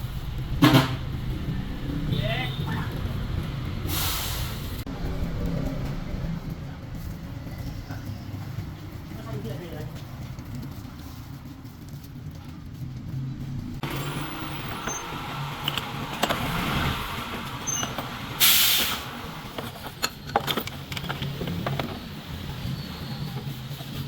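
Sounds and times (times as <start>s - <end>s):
air hiss: 3.9s - 4.8s, 18.4s - 19.2s
metal clicks and knocks: 13.6s - 18.3s, 19.4s - 22.2s.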